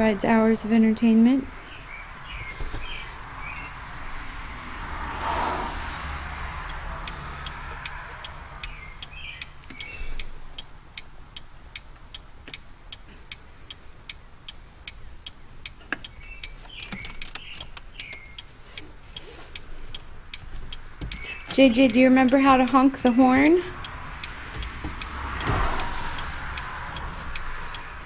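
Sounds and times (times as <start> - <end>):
steady even clicking: 6.6 - 28.0.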